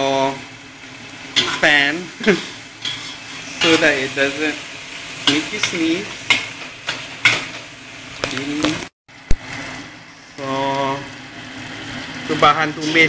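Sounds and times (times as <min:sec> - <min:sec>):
paste sizzling in oil: 0:00.0 - 0:13.0
metal spatula scraping a wok: 0:01.4 - 0:01.7, 0:02.8 - 0:04.1.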